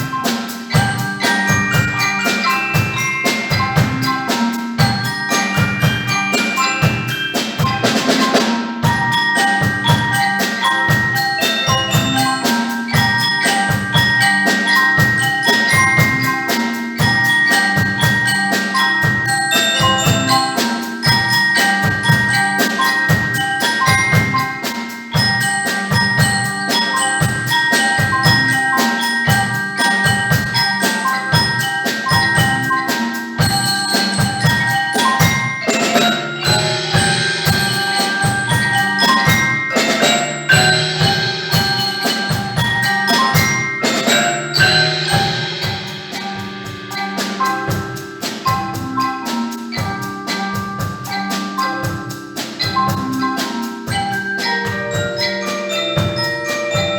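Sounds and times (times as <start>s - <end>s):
drums: 0.0s - 56.9s
tuned mallet percussion: 0.0s - 56.9s.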